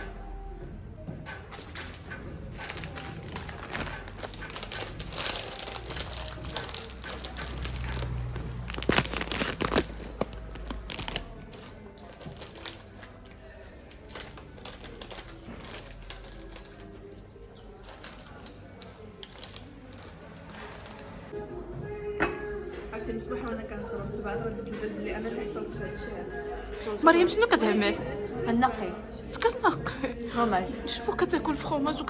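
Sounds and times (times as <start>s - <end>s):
crinkling and crackling of eating: 1.4s - 21.3s.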